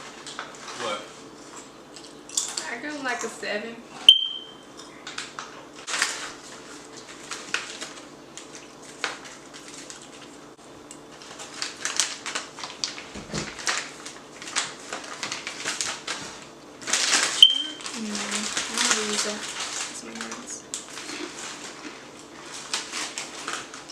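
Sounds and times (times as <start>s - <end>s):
crunchy snacks being chewed: 5.1s - 23.9s.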